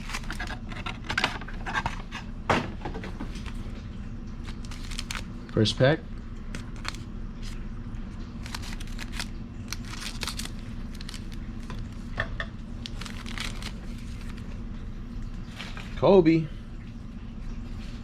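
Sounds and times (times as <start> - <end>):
wrapper tearing and crinkling: 0.0 - 0.6, 4.4 - 5.6, 6.5 - 7.6, 8.4 - 12.2, 12.8 - 14.5
steady low hum: 0.0 - 18.0
cards being handled: 4.5 - 5.3, 6.5 - 7.6, 8.4 - 12.1, 12.8 - 14.5.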